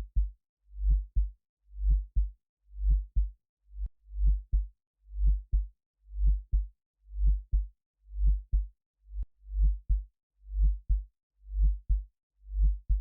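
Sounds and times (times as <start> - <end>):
low heartbeat thuds: 0.0 - 0.3, 1.0 - 1.3, 2.0 - 2.3, 2.9 - 3.3, 12.6 - 13.0.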